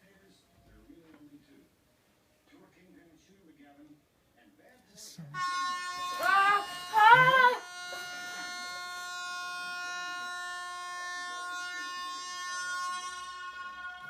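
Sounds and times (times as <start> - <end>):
air horn tone from phone speaker: 5.3 - 14.0
person crying out: 6.2 - 7.6.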